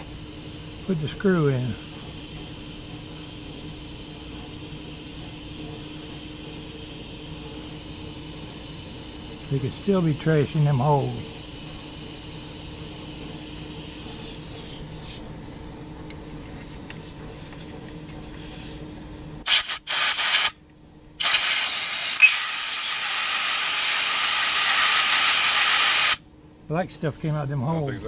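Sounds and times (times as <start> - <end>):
aerosol spray bursts: 19.4 - 20.6, 21.2 - 26.2.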